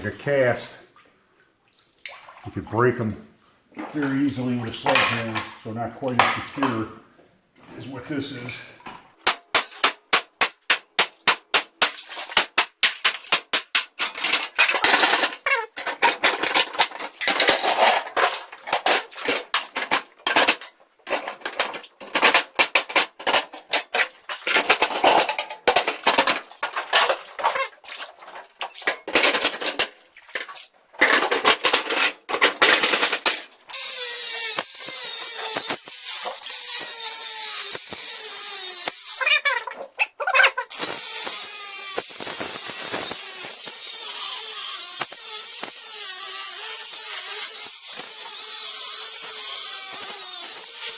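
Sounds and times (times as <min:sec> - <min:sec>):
hammering: 0:09.2 - 0:15.3
power drill whining: 0:33.7 - 0:39.5, 0:40.7 - 0:50.9.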